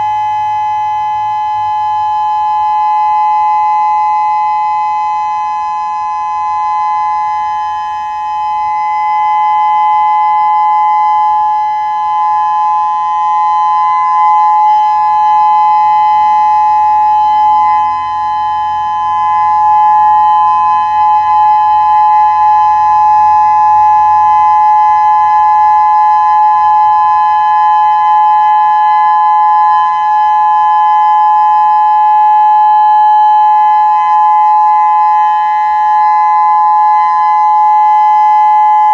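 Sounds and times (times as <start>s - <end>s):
warning siren steady chord: 0.0s - 38.9s.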